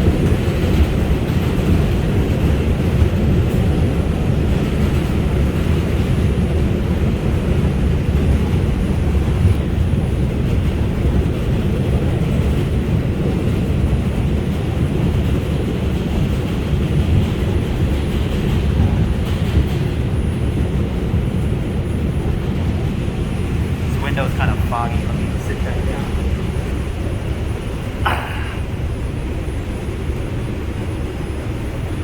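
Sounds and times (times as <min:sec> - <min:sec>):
subway train wheels on rails: 0:00.0 - 0:32.0.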